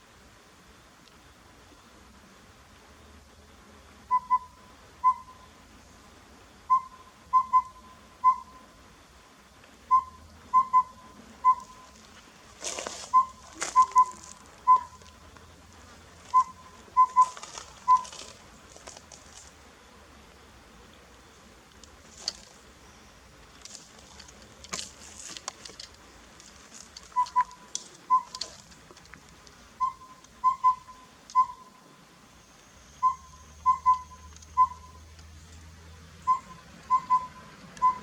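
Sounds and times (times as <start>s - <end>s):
owlet whistled hoots: 4.1s - 5.5s, 6.7s - 8.7s, 9.9s - 12.0s, 13.1s - 15.1s, 16.3s - 18.1s, 27.1s - 28.5s, 29.8s - 31.8s, 32.4s - 35.1s, 36.2s - 38.0s
rustling: 11.6s - 19.8s, 21.3s - 29.8s.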